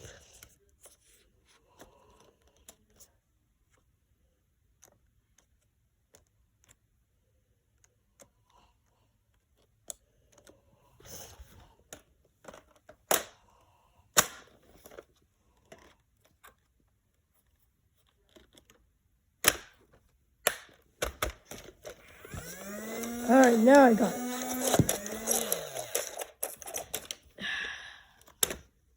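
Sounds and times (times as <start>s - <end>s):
plastic clicks and clatters: 11.8s - 13.4s, 14.1s - 23.3s, 24.3s - 27.4s.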